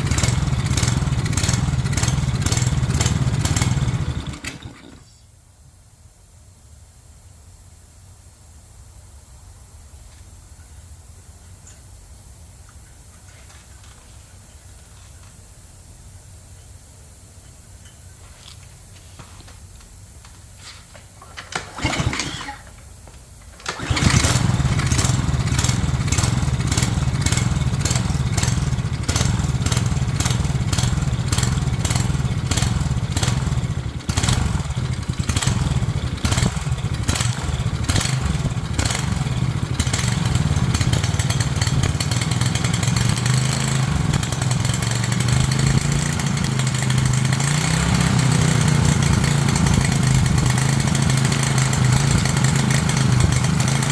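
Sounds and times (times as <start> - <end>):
small gasoline engine running: 0.0 - 5.0, 21.7 - 22.7, 23.6 - 53.9.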